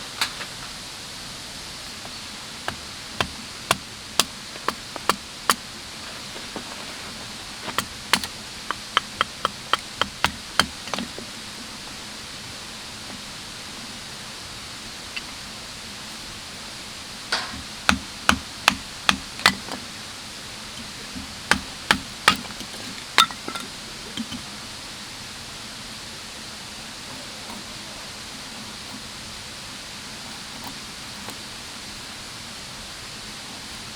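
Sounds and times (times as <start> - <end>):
wood being chopped: 1.9 - 12.0, 17.3 - 24.5.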